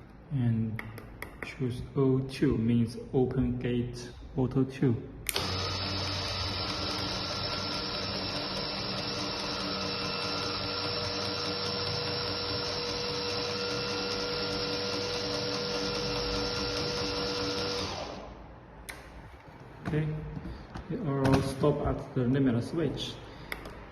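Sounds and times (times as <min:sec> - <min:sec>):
electric gate motor whirring: 0:05.3 - 0:18.4.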